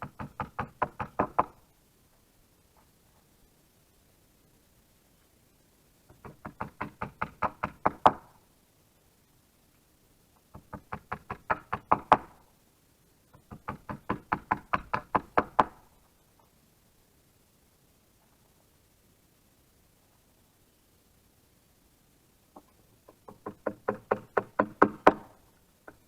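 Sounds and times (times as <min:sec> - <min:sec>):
hammer driving nails into wood: 0:10.6 - 0:12.4, 0:23.1 - 0:25.4.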